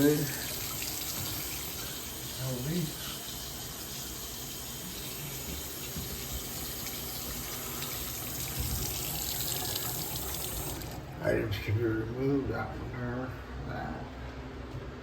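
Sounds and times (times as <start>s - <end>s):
faucet running into sink: 0.0s - 11.0s.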